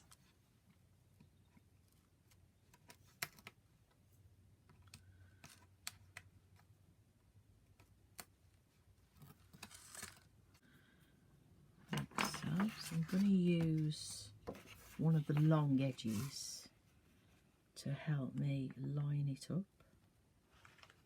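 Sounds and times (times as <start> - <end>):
paper rustle: 9.1 - 10.3, 11.9 - 16.4.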